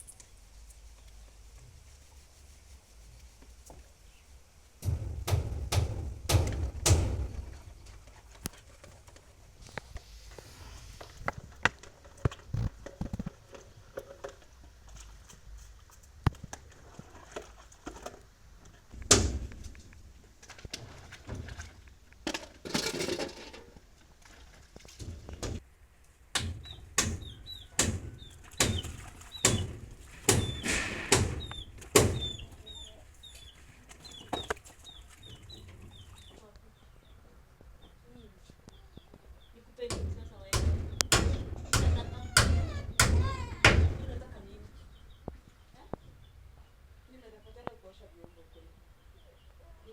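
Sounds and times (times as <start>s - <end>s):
heavy thuds: 4.8s - 8.0s, 39.9s - 44.6s
small birds chirping: 26.5s - 49.9s
heavy blows: 39.9s - 44.4s.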